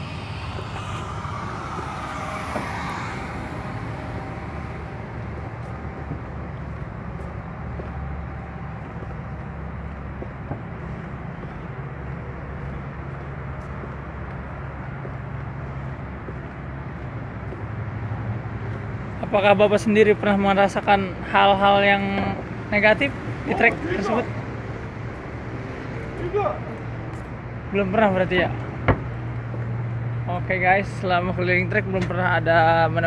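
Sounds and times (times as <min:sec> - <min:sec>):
hiss: 0:00.0 - 0:07.0
steady low rumble: 0:00.0 - 0:30.6.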